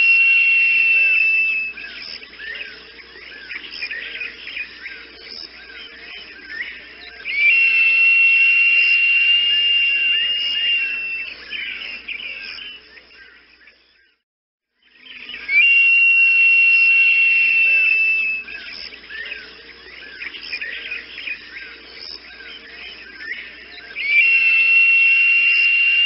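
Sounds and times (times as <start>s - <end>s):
long high bird whistle: 0.0s - 2.8s, 6.5s - 12.8s, 14.9s - 19.4s, 23.2s - 26.0s
birds chirping: 0.0s - 14.2s, 14.8s - 26.0s.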